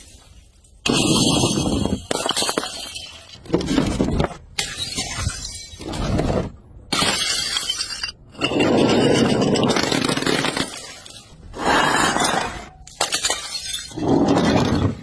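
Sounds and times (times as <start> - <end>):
glass bottles smashing: 0.8 - 3.4, 6.9 - 11.4, 12.2 - 14.7.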